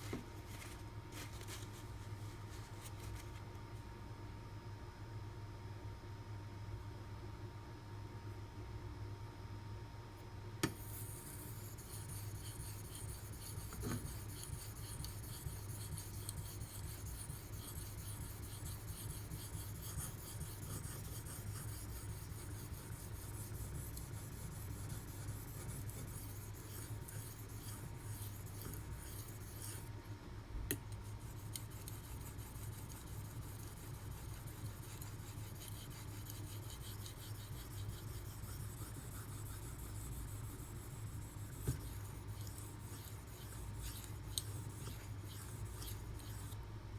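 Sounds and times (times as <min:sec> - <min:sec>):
knife scraping on whetstone: 0:10.8 - 0:29.9, 0:31.3 - 0:46.6.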